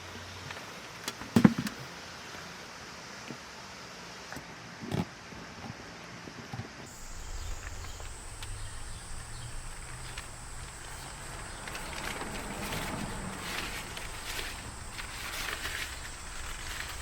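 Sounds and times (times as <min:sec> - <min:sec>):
high-pitched insect trill: 0:06.9 - 0:17.0
rustling scuffs: 0:06.9 - 0:17.0.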